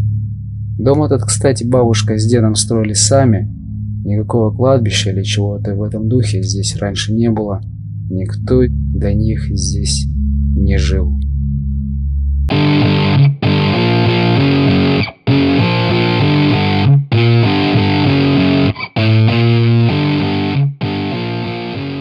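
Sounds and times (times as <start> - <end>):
distorted electric guitar riff: 12.5 - 22.0.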